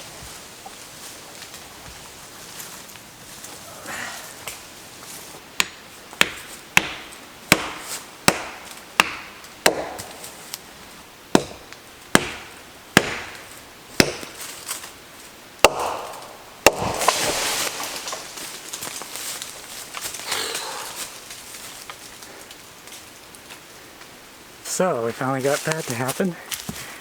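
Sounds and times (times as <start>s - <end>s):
axe chopping wood: 5.6s - 10.3s, 11.3s - 14.5s, 15.6s - 18.3s
tree crashing down: 15.6s - 22.0s.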